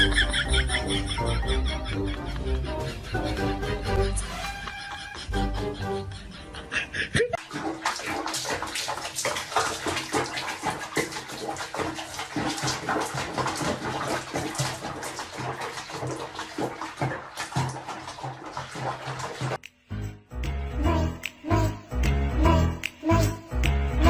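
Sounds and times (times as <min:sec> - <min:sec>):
water splashing: 0:07.4 - 0:19.6.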